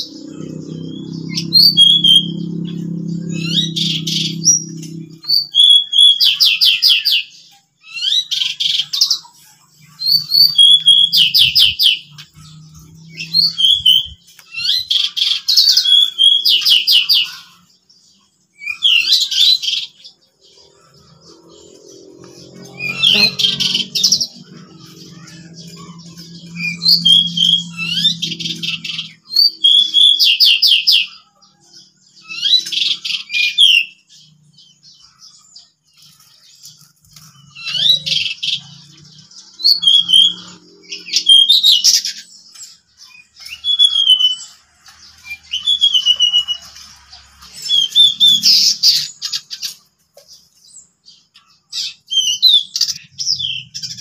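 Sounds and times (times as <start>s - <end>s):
birds trilling and chattering: 0.0s - 54.0s.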